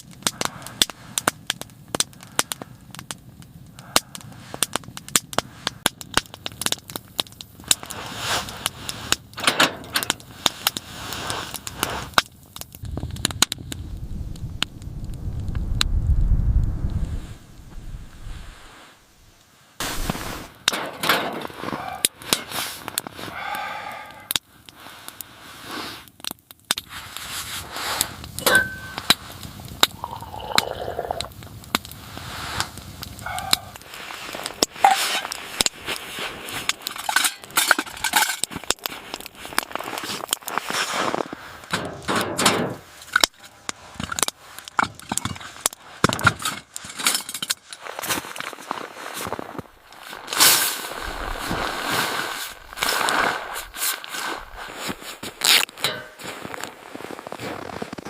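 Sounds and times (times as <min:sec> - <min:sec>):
objects clicking and clinking: 0:36.8 - 0:38.8.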